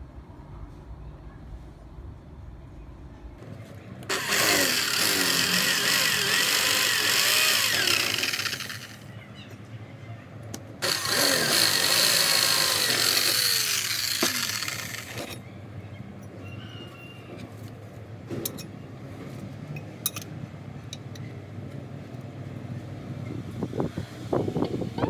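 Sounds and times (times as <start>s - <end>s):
cutting machine motor whining: 4.1s - 9.1s, 10.8s - 15.4s.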